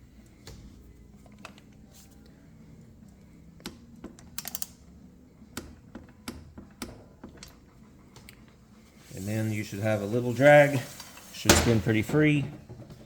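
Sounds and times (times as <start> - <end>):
ratcheting clicks: 3.6 - 4.8.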